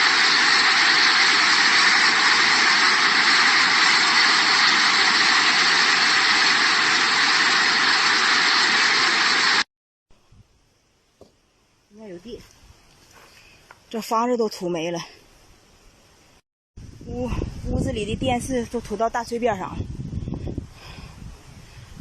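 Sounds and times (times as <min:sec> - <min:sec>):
storm wind and rain: 0:16.8 - 0:22.0.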